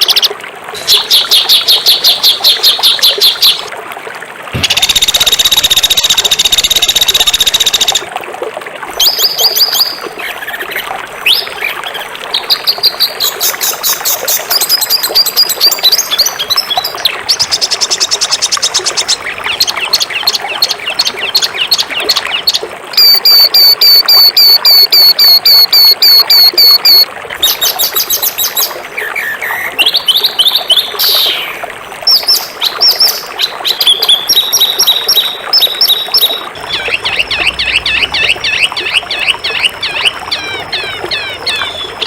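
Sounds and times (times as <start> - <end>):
songbirds chirping and trilling: 28.3 - 42.0.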